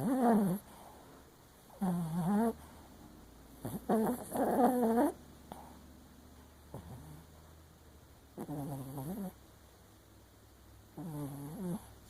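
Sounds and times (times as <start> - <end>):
dog snoring and whimpering: 0.0 - 0.7, 1.7 - 2.7, 3.6 - 5.6, 6.7 - 7.4, 8.4 - 9.4, 10.9 - 12.0.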